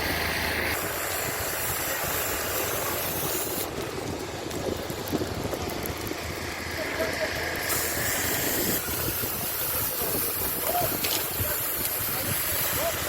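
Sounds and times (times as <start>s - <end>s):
rushing hiss: 0.0s - 3.7s, 6.5s - 13.0s
engine running: 0.0s - 13.0s.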